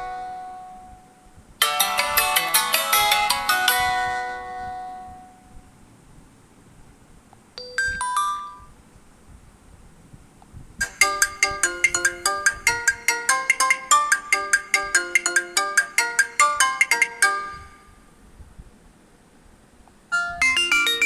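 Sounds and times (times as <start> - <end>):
phone ringtone melody: 1.6 - 5.2, 7.6 - 8.7, 10.8 - 17.8, 20.2 - 21.0.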